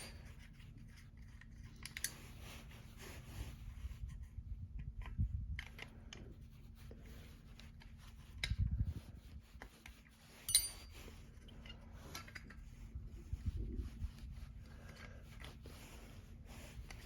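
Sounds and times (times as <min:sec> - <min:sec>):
sharp metallic clink: 0:10.5 - 0:10.9.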